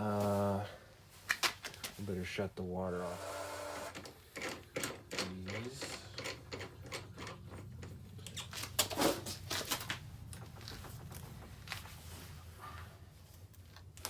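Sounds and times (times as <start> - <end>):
hands clicking and knocking plumbing: 4.0 - 12.0.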